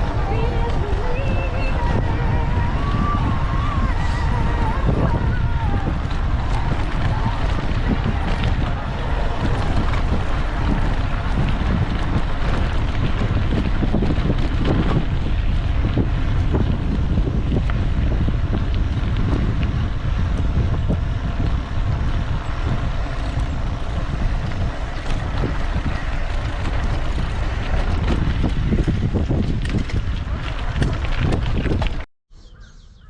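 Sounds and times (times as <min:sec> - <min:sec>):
wind buffeting microphone: 0:00.0 - 0:33.0
bike clicks and knocks: 0:06.0 - 0:32.0.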